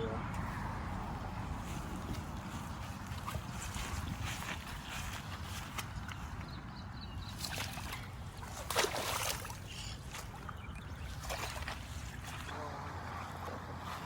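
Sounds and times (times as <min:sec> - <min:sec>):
steady low rumble: 0:00.0 - 0:07.3
water sloshing and splashing: 0:00.4 - 0:12.6.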